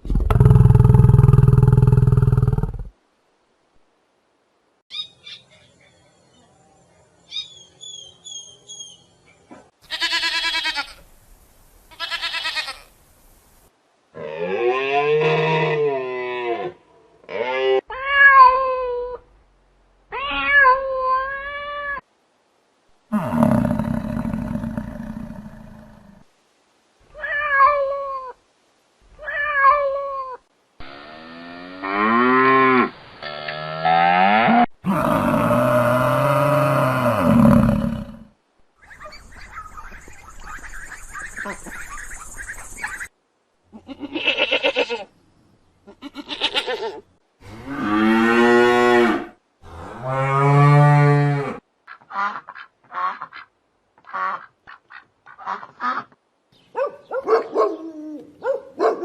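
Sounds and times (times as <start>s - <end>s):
animal calls: 38.8s - 43.1s.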